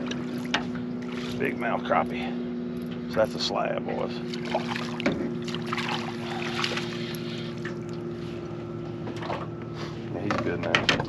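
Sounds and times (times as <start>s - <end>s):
knocks and rustles on boat: 0.0s - 1.6s, 4.2s - 11.0s
boat motor humming: 0.0s - 11.0s.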